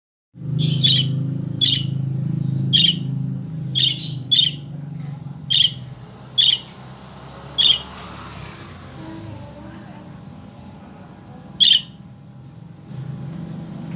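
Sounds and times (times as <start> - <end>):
bird giving sharp calls: 0.6 - 4.8, 5.4 - 8.1, 11.6 - 12.0.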